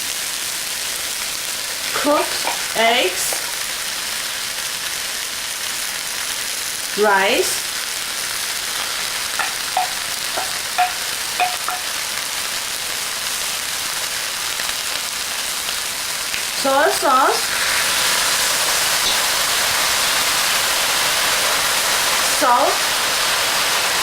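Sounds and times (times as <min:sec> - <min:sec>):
food sizzling in hot oil: 0:00.0 - 0:24.0
utensil clinks: 0:09.4 - 0:11.9.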